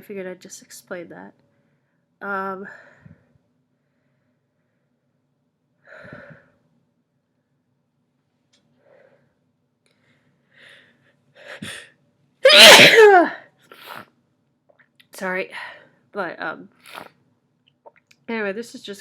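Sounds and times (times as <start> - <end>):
quiet catching breaths: 1.5 - 5.1, 5.8 - 6.7, 8.6 - 12.0
person sneezing loudly: 12.4 - 14.0.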